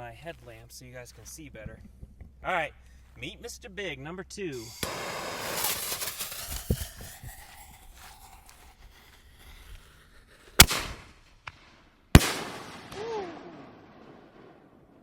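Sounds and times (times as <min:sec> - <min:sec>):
firework shell bang with echo: 0:04.7 - 0:07.8.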